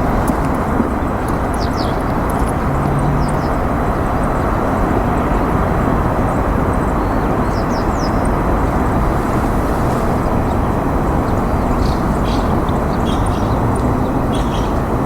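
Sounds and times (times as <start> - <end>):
steady outdoor rumble: 0.0 - 15.0
faint high bird chirps: 11.3 - 14.8.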